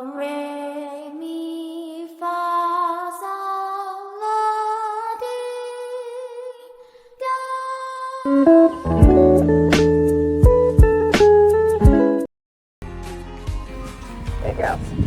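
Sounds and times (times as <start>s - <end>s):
slow melody of held notes: 8.4s - 10.8s.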